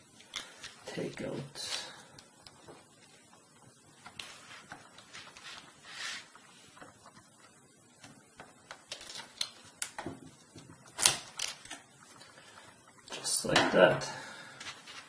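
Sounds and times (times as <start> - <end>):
brief scrape: 5.4 - 6.3.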